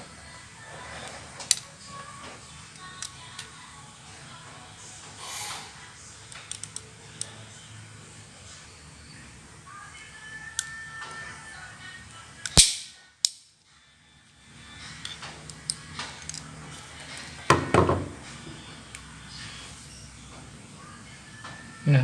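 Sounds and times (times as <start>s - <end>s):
handling clicks: 6.3s - 7.3s
sharp snap: 12.5s - 13.4s.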